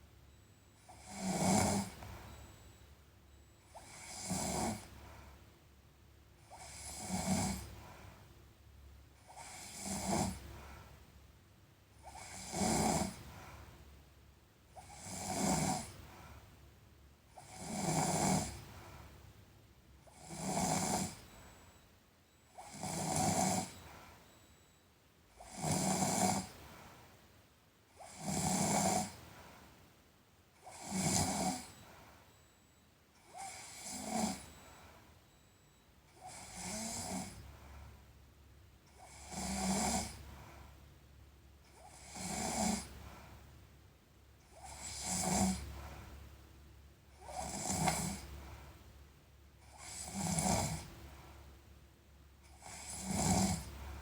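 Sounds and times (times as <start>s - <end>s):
person snoring: 0.9s - 2.0s, 22.6s - 23.8s, 30.6s - 31.7s, 33.3s - 34.5s, 36.2s - 37.4s, 39.0s - 40.2s, 44.6s - 45.6s, 52.6s - 53.7s.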